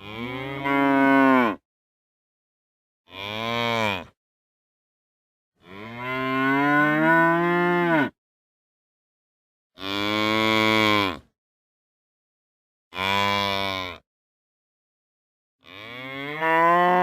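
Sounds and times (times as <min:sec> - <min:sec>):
cow mooing: 0:00.0 - 0:01.6, 0:03.1 - 0:04.1, 0:05.6 - 0:08.2, 0:15.6 - 0:17.0.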